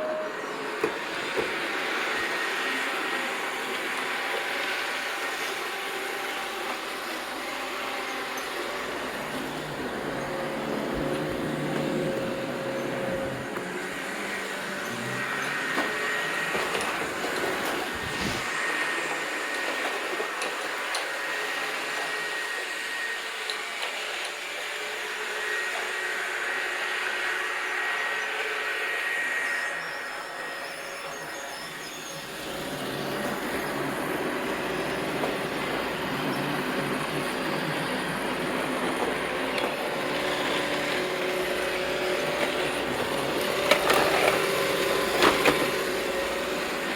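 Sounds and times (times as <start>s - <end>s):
thin high whine: 0.0s - 1.0s, 8.0s - 18.9s
robot vacuum motor and brush: 0.0s - 46.9s.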